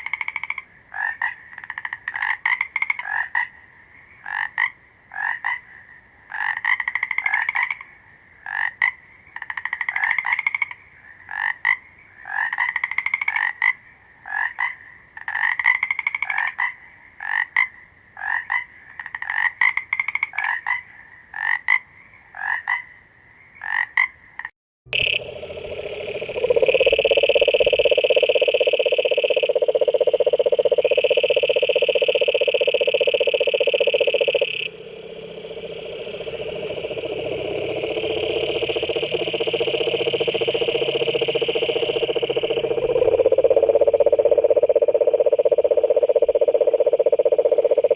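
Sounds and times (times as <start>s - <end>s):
frogs croaking: 0.0s - 47.9s
loud continuous trill: 24.9s - 28.9s, 31.7s - 44.3s.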